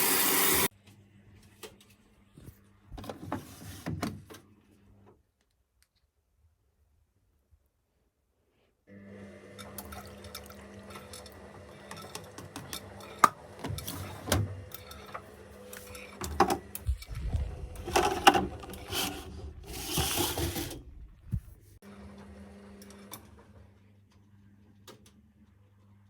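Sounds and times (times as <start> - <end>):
washing machine motor hum: 0.0 - 0.7, 8.9 - 23.8.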